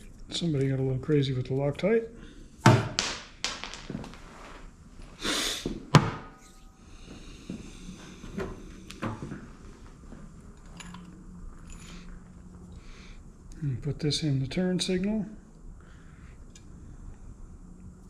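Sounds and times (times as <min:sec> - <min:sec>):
short hiss: 0:05.2 - 0:05.8.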